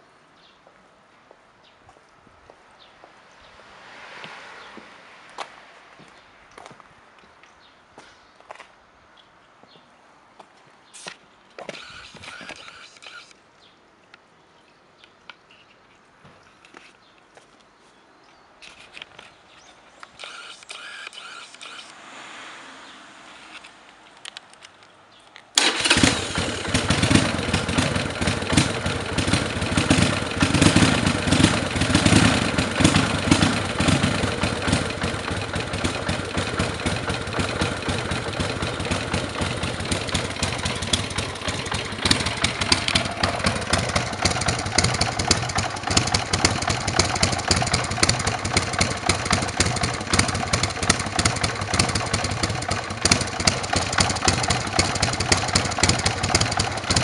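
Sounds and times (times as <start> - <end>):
motorcycle engine idling: 25.6 - 57.0.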